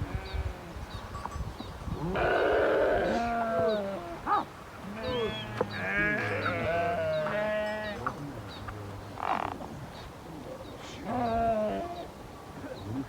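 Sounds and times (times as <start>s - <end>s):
sheep bleating: 4.8s - 8.1s.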